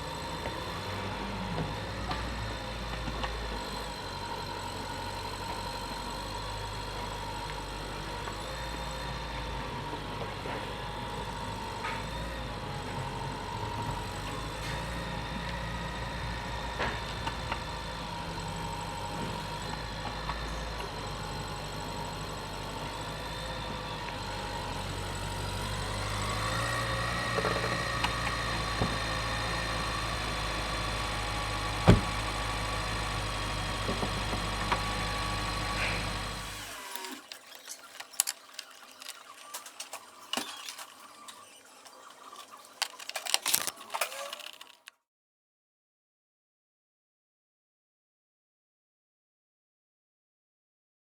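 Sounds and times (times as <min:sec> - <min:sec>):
car engine idling: 0:25.0 - 0:36.6.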